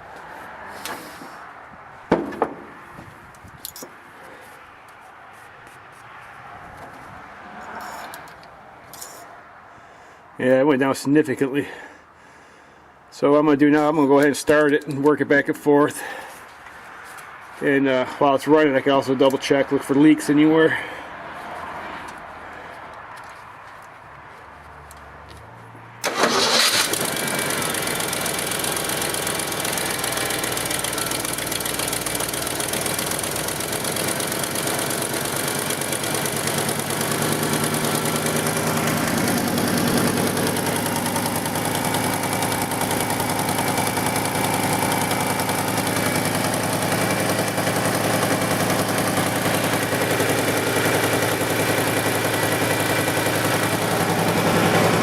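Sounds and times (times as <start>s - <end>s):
truck engine starting and idling: 26.0s - 55.0s.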